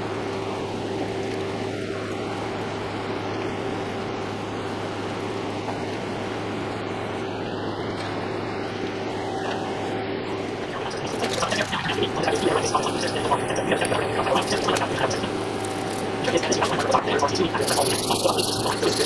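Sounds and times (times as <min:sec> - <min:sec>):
milling machine whirring: 0:10.6 - 0:19.0.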